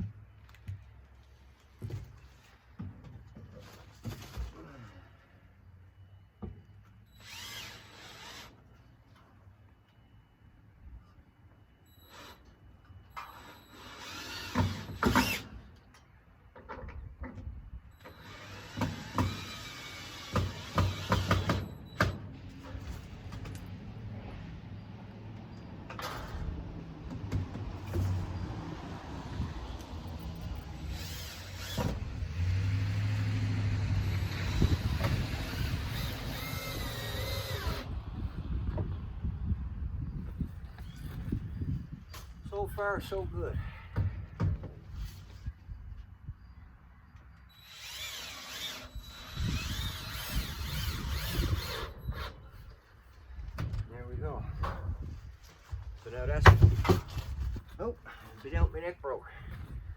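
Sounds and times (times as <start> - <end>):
power drill driving screws: 7.1 - 8.7, 13.2 - 15.7, 18.0 - 22.3, 30.7 - 32.1, 34.0 - 37.9, 47.5 - 52.4.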